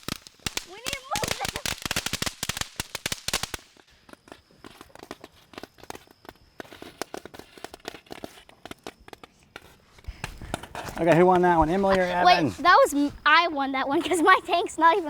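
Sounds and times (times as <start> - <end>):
firecracker cracks: 0.0 - 10.7
firework pops and crackles: 0.0 - 13.2.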